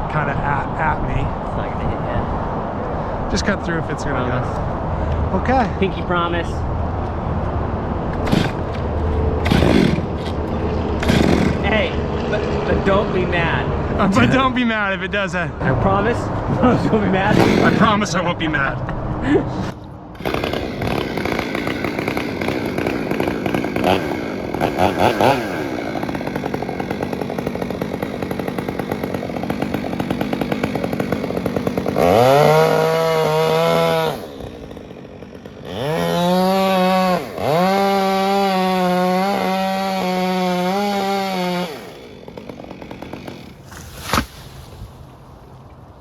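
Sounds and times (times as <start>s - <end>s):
chainsaw cutting wood: 8.2s - 13.5s, 17.2s - 18.0s, 19.6s - 45.6s.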